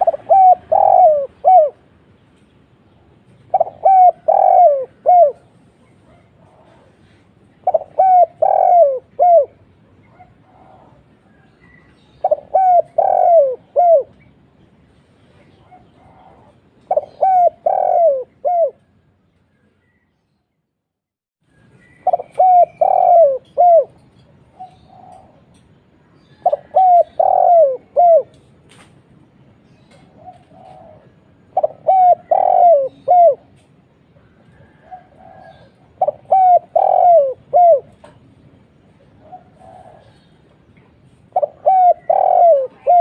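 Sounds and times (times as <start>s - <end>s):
dove cooing: 0.0s - 1.9s, 3.4s - 14.2s, 15.4s - 18.9s, 22.0s - 25.6s, 26.2s - 28.4s, 29.9s - 40.4s, 41.3s - 43.0s.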